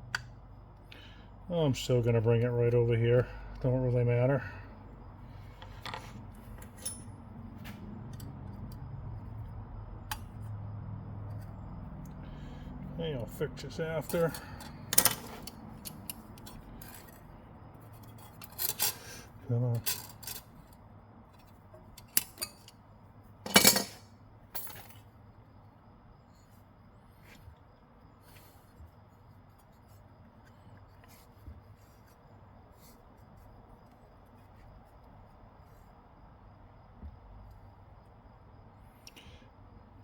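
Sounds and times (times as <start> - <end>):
steady low hum: 0.0 - 40.0
metal tools clinking: 5.8 - 7.2, 18.3 - 19.0, 19.7 - 20.5, 23.5 - 24.0
small metal parts clicking: 18.0 - 19.0, 19.7 - 20.5.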